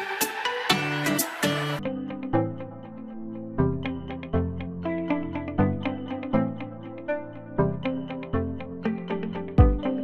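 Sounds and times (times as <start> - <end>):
plucked guitar-like notes: 9.0 - 10.0
steady beat: 9.6 - 9.9.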